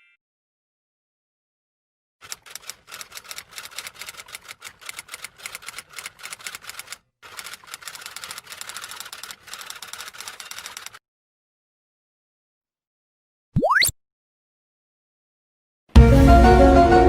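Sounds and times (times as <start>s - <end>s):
typewriter keystrokes clattering: 2.2s - 11.0s.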